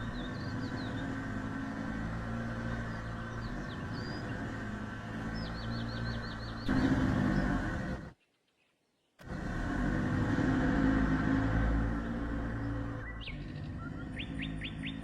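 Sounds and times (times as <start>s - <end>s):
small bird chirping: 0.0s - 1.6s, 2.3s - 9.2s, 12.0s - 15.0s.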